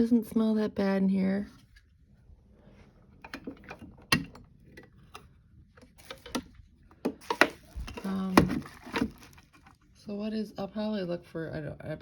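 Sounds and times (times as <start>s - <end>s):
hard objects clicking and knocking: 3.2s - 9.7s.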